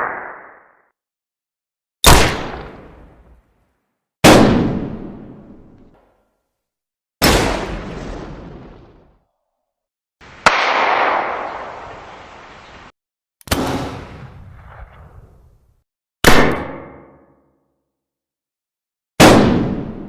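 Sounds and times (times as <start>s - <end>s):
gunshots with echoing tail: 2.0s - 3.2s, 4.2s - 5.8s, 10.4s - 11.9s, 13.5s - 15.4s, 19.2s - 20.0s.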